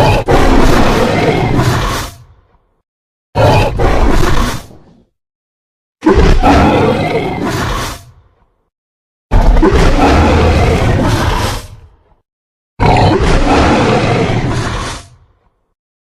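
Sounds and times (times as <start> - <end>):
monster roar: 0.0 - 2.2, 6.0 - 8.1, 9.3 - 11.9, 12.8 - 15.2.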